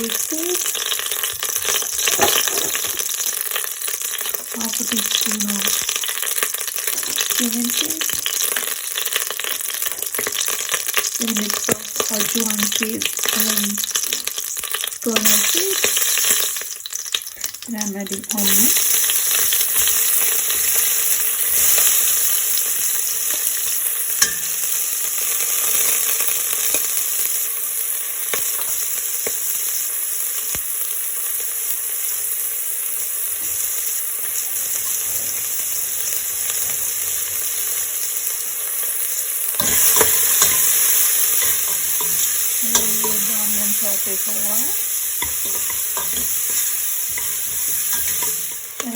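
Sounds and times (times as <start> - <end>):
onion sizzling in a pan: 0.0 - 48.9
utensil clicking while stirring: 39.6 - 44.3, 45.2 - 48.9.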